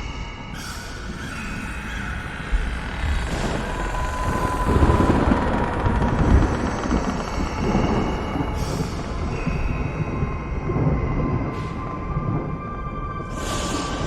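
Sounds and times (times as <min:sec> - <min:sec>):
eerie droning tones: 0:00.0 - 0:14.0
thunder crack and rumble: 0:02.5 - 0:14.0.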